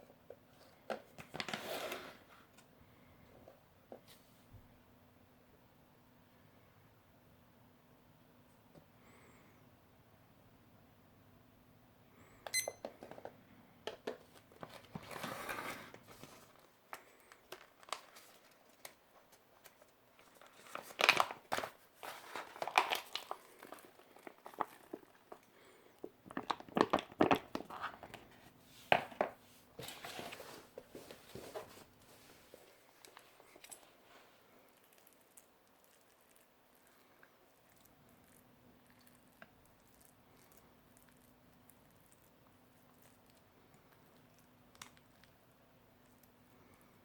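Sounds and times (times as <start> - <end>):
plastic and foil packets crinkling: 14.3 - 28.2.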